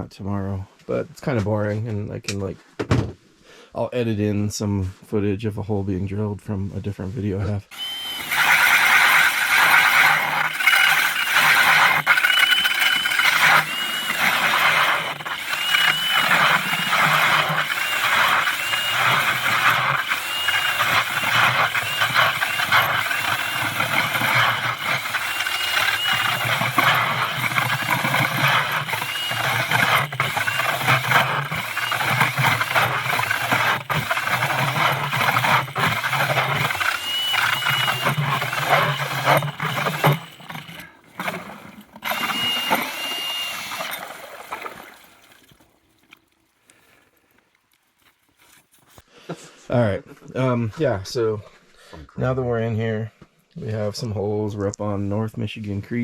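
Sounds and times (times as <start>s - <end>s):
power ice auger whining: 7.7s - 45.6s.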